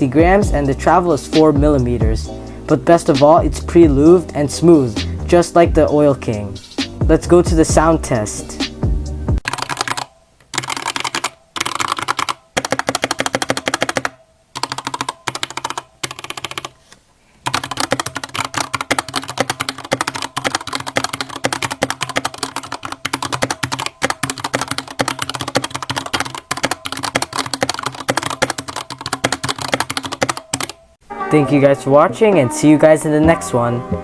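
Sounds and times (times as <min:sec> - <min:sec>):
typing on mechanical keyboard: 0:09.4 - 0:16.8, 0:17.4 - 0:30.8.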